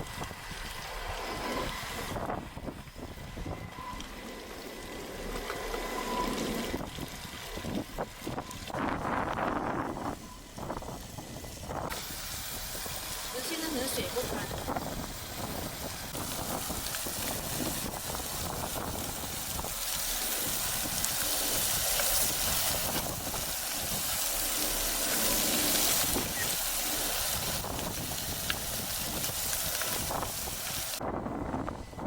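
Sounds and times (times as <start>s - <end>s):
wind gusting across microphone: 0.0s - 5.0s, 5.8s - 32.0s.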